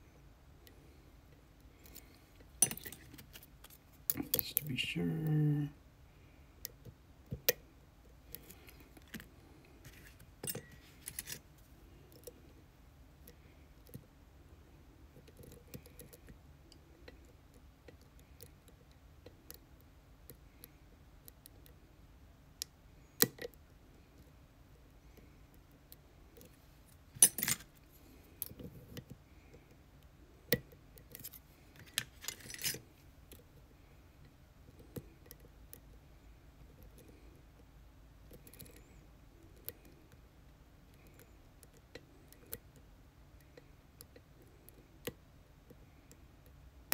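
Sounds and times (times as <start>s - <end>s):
lock pick scraping: 9.8s - 11.4s, 27.2s - 27.7s, 31.0s - 32.8s.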